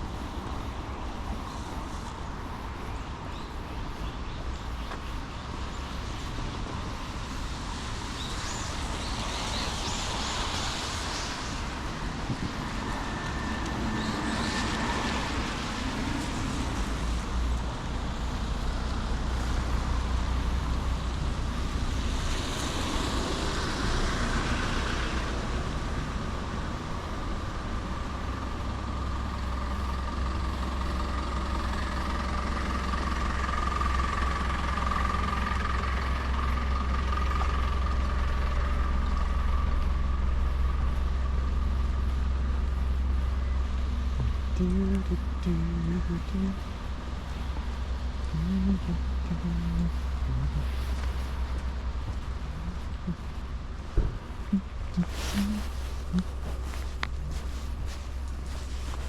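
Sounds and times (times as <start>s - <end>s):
tyres on wet road: 0.0s - 59.0s
wind rumble on microphone: 0.0s - 59.0s
faint steady whine: 23.9s - 59.0s.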